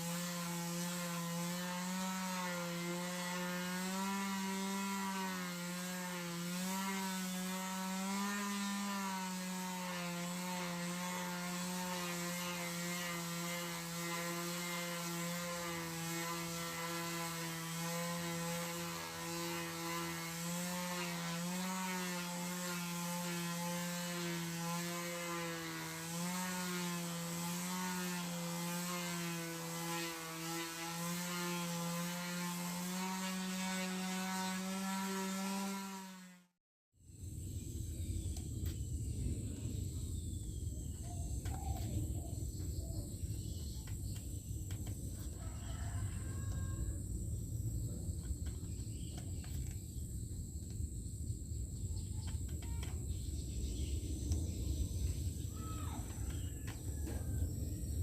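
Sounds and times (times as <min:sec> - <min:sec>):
electric grinder on steel: 0:00.0 - 0:36.6.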